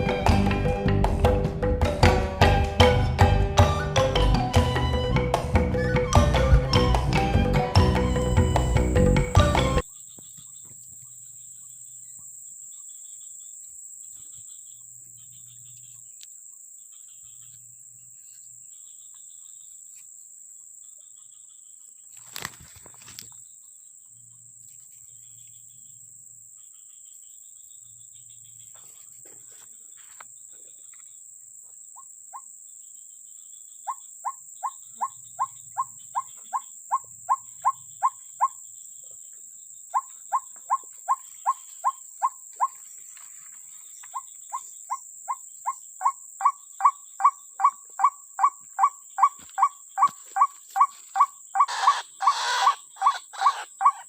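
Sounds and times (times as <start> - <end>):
brief rustle: 22.1 - 23.4
high-pitched insect drone: 33.1 - 54.0.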